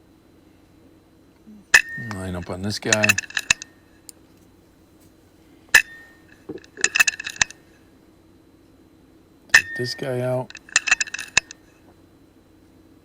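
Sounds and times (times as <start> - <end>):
metallic clicks of rifle action: 6.6 - 7.6, 10.5 - 11.6.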